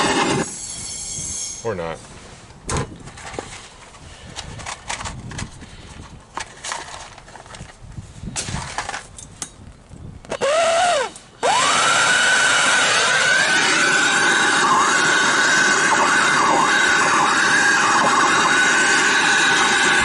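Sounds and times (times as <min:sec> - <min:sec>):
heat gun whining and blowing air: 0:00.0 - 0:00.6, 0:10.3 - 0:20.0
tools clattering: 0:08.4 - 0:09.6.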